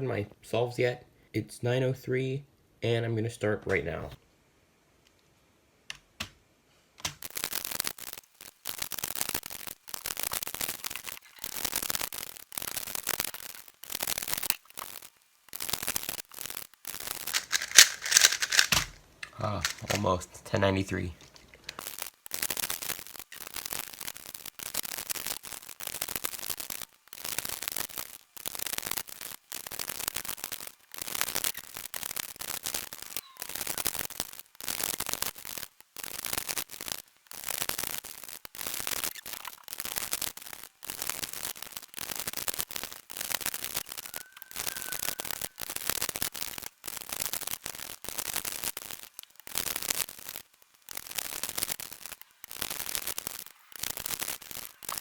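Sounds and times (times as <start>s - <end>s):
puzzle cube plastic clicking: 17.0s - 20.1s.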